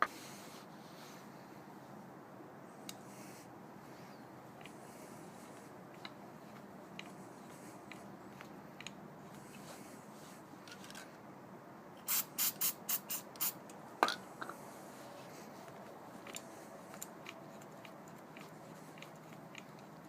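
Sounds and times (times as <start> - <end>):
aerosol can spraying: 12.0 - 13.6.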